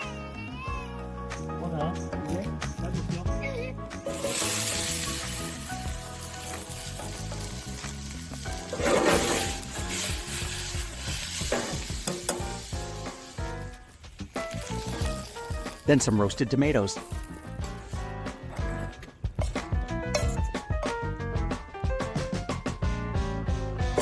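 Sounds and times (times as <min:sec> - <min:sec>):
food sizzling in a pot: 0:03.8 - 0:20.4.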